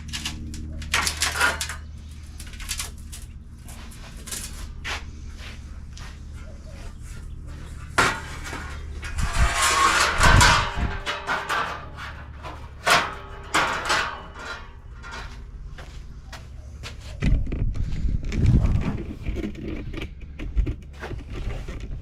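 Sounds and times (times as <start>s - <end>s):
metal scraping rattle: 0.0s - 5.3s, 6.3s - 16.2s
sheet metal knocks and clanks: 7.9s - 15.5s.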